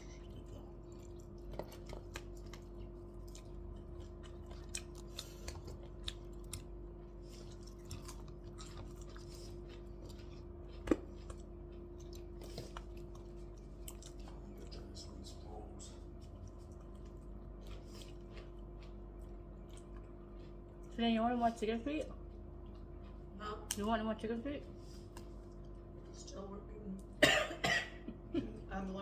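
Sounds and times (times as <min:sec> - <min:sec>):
people chewing: 0:00.0 - 0:27.2
steady hum: 0:00.0 - 0:29.0.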